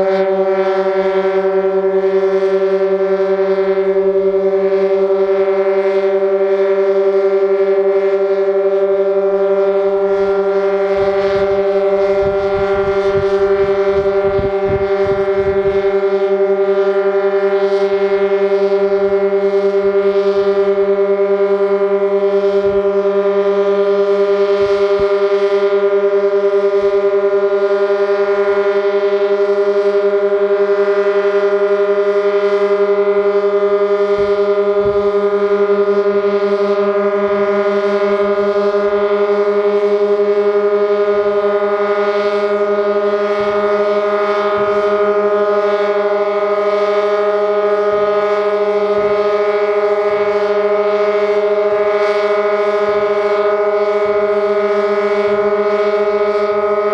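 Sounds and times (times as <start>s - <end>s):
siren steady low tone: 0.0s - 56.9s.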